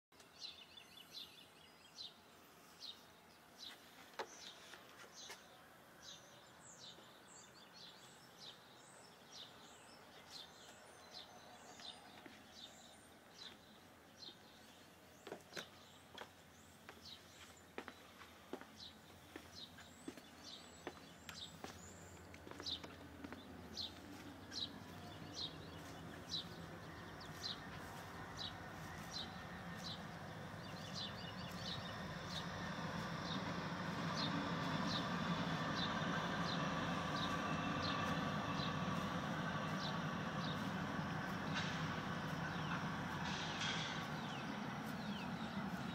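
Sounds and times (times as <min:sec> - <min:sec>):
vehicle engine and tyre noise: 0:15.6 - 0:45.9.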